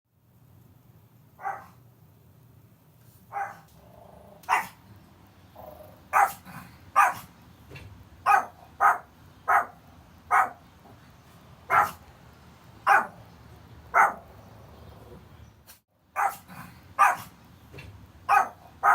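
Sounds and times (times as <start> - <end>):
puppy barking: 1.4 - 1.8, 3.3 - 3.7, 4.5 - 4.8, 5.7 - 7.3, 8.2 - 10.6, 11.7 - 12.0, 12.8 - 13.2, 13.9 - 14.4, 16.2 - 17.3, 18.3 - 18.9.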